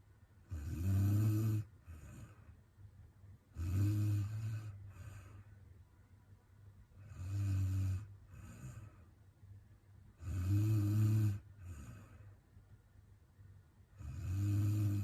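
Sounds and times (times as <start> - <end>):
woman snoring: 0.5 - 2.4, 3.6 - 5.2, 7.0 - 9.0, 10.2 - 12.2, 14.0 - 15.0
soft breath: 1.7 - 2.9, 3.8 - 5.9, 6.9 - 9.4, 11.4 - 12.6.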